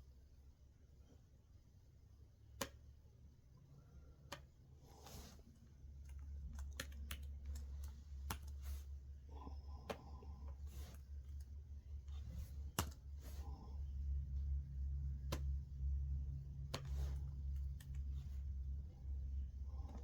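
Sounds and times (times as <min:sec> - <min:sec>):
low steady hum: 0:00.0 - 0:20.0
faint clicks and taps: 0:04.2 - 0:04.6, 0:05.6 - 0:08.9, 0:09.7 - 0:13.6, 0:15.1 - 0:15.8, 0:16.6 - 0:18.5.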